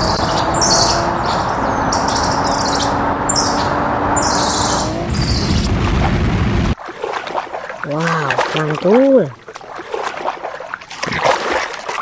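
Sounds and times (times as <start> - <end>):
birds chirping: 0.0 - 5.7.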